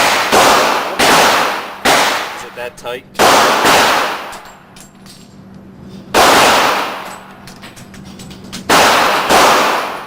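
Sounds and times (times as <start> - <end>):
echoing gunshots: 0.0 - 2.6, 3.2 - 4.4, 6.1 - 7.3, 8.7 - 10.0.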